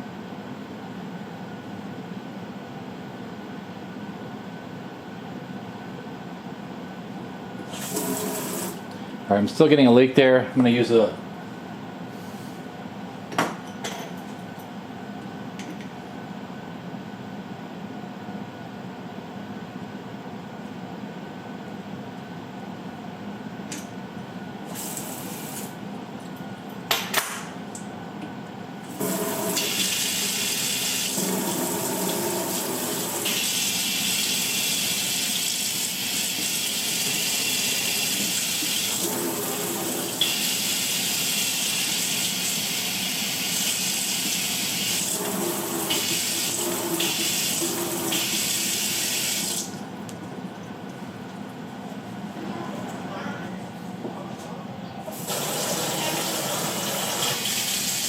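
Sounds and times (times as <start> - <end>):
faucet running water: 7.7 - 8.8, 29.0 - 49.7, 55.2 - 58.0.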